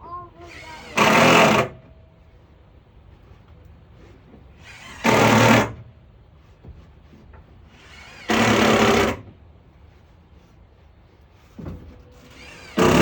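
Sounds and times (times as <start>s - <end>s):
power driver driving screws: 0.5s - 1.7s, 7.8s - 9.2s, 12.3s - 13.0s.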